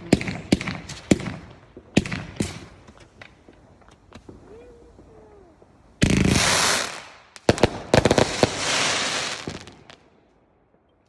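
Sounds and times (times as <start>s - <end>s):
firework whooshing: 0.0s - 10.0s
crackling hiss: 0.0s - 10.5s
firework cracks and bangs: 0.0s - 10.9s.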